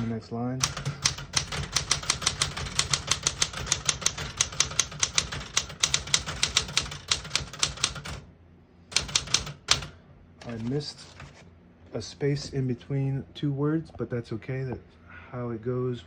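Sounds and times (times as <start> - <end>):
typewriter keys clacking: 0.0 - 8.2, 8.9 - 10.7.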